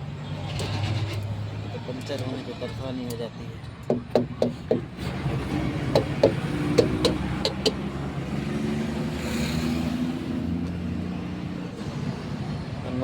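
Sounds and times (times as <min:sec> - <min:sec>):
passing vehicle rushing: 0:04.9 - 0:13.0.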